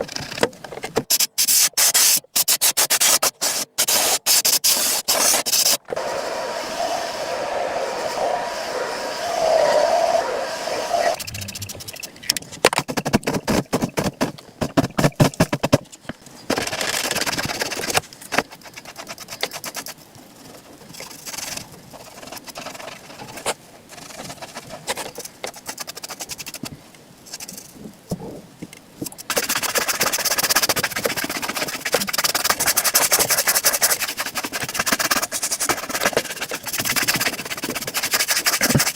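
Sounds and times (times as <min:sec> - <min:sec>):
brush and cloth rubbing boot: 0:16.8 - 0:26.7, 0:29.3 - 0:38.9.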